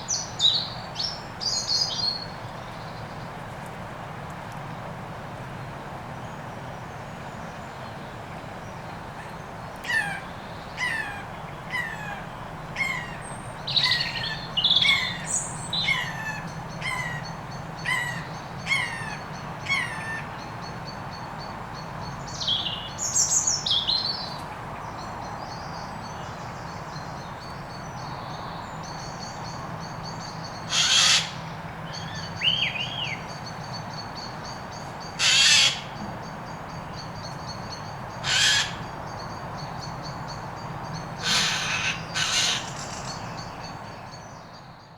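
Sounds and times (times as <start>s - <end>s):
loud harsh bird call: 30.7s - 31.5s, 35.2s - 36.0s, 38.2s - 39.0s, 41.2s - 43.3s.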